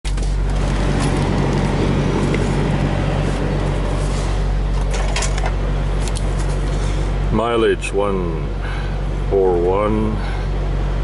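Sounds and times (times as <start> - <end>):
diesel truck engine idling: 0.1 - 11.0.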